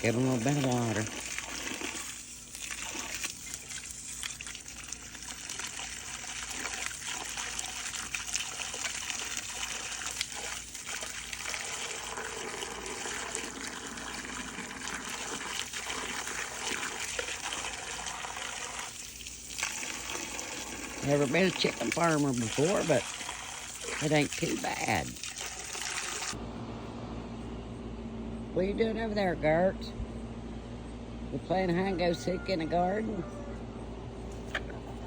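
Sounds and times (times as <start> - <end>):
running water splashing: 0.0 - 26.4.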